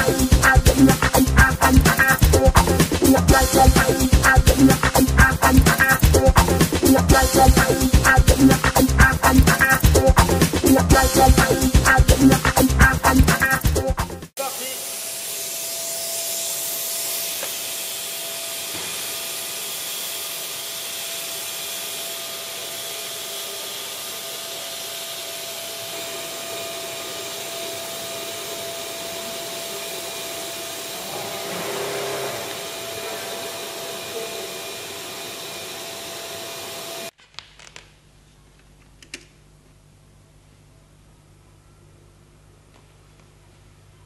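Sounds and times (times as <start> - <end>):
hot-air welding machine blower hiss: 14.4 - 37.1.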